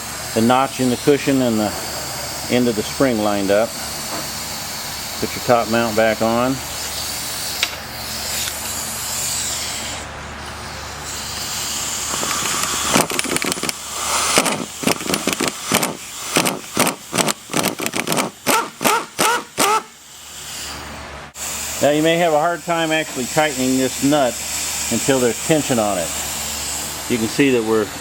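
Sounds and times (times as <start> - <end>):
impact tool bursts on nut: 12.0 - 19.9
steady hiss: 13.7 - 14.9.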